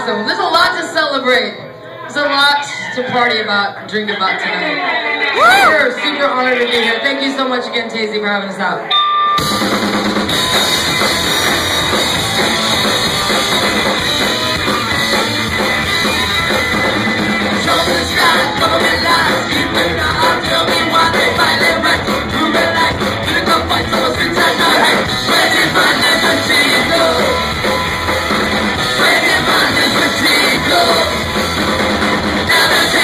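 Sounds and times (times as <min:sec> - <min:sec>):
ska-punk band playing live: 0:09.3 - 0:33.0
drum hits: 0:09.4 - 0:33.0
person singing: 0:17.6 - 0:27.8, 0:28.9 - 0:31.4.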